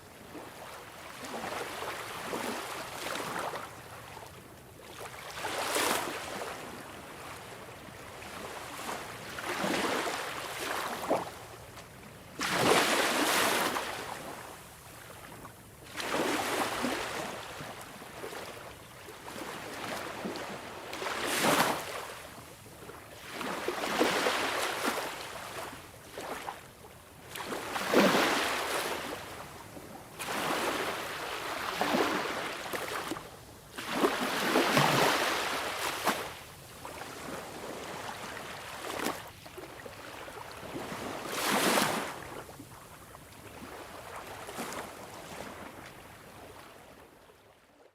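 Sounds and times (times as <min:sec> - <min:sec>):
sea waves breaking on shore: 0:05.0 - 0:11.4, 0:12.3 - 0:14.5, 0:15.9 - 0:22.3, 0:23.2 - 0:26.6, 0:27.2 - 0:42.6, 0:43.3 - 0:47.0.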